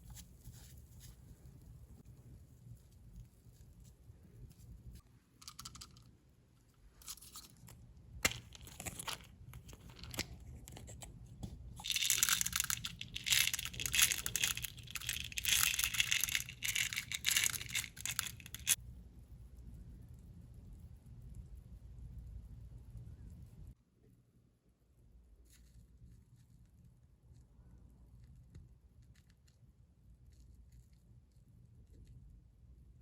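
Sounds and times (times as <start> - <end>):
plastic crackling and crinkling: 7.0 - 11.0, 11.8 - 18.8.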